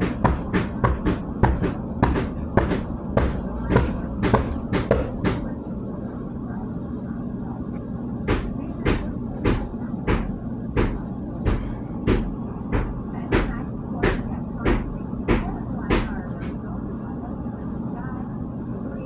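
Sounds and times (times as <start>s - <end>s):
tiles being chipped off wall: 0.0s - 5.5s.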